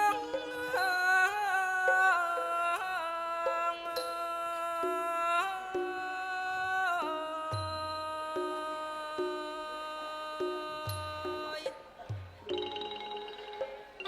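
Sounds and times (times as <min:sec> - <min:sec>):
sliding wavering melody line: 0:12.4 - 0:14.0.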